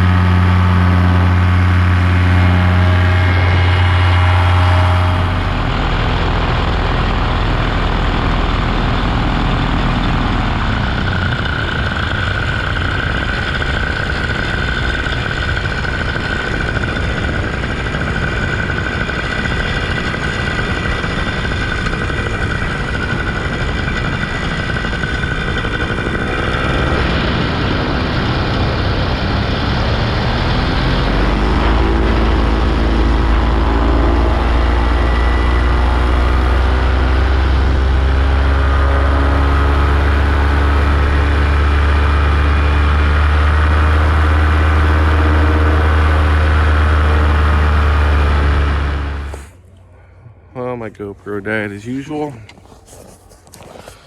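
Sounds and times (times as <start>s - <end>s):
engine running: 0.0s - 54.0s.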